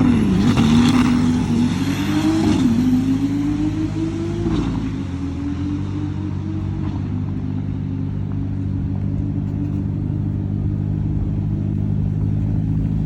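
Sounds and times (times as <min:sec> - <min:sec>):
car engine idling: 0:06.2 - 0:13.0.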